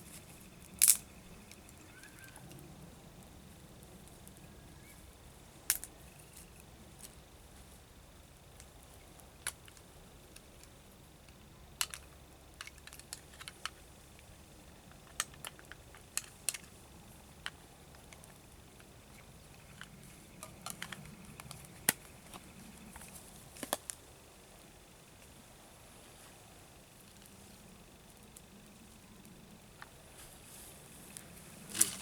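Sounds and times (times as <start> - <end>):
campfire crackling and popping: 0.0 - 4.5, 8.2 - 25.4.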